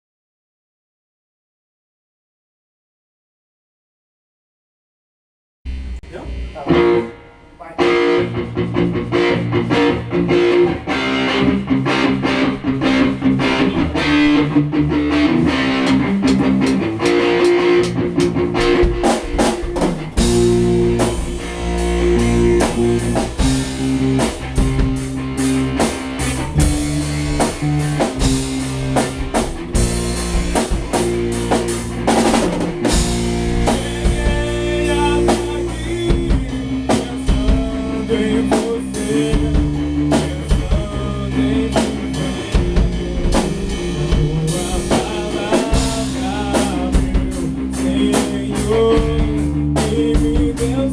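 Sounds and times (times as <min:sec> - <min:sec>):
bass guitar: 0:05.7 - 0:50.9
drum kit: 0:05.7 - 0:50.9
electric guitars: 0:05.7 - 0:50.9.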